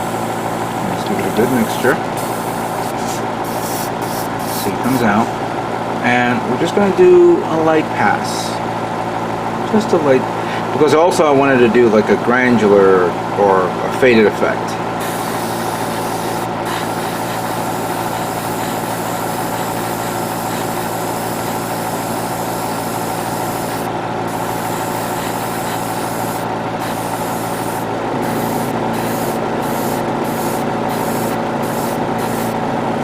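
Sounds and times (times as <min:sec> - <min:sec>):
airbrush spraying hiss: 0:00.0 - 0:05.0, 0:15.0 - 0:32.6
spray booth fan running: 0:00.0 - 0:33.0.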